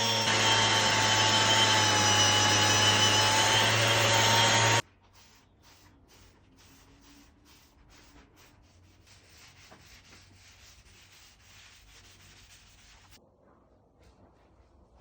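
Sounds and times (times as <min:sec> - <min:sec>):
sandpaper rubbing on wood: 0:04.0 - 0:13.2.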